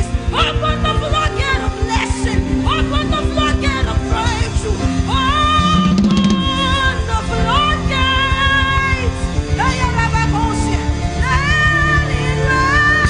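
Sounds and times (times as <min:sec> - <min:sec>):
person singing long held notes: 0:00.4 - 0:10.6
band playing a steady beat: 0:05.6 - 0:06.8.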